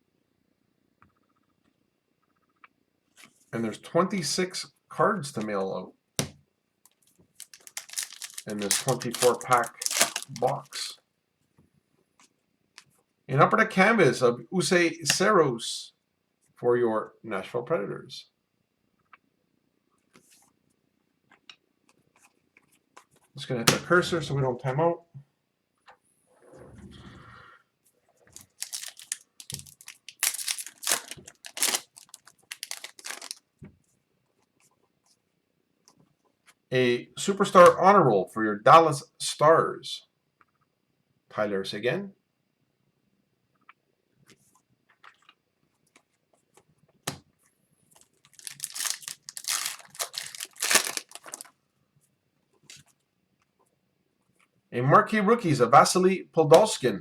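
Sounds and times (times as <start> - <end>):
foil wrapper tearing and crinkling: 7.0 - 10.9, 28.4 - 33.4, 48.0 - 51.5.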